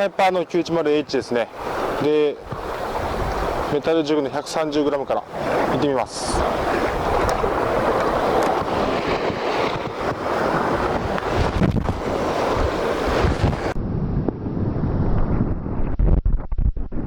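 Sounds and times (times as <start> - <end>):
surf on the shore: 0.0 - 13.8
wind buffeting microphone: 1.0 - 17.0.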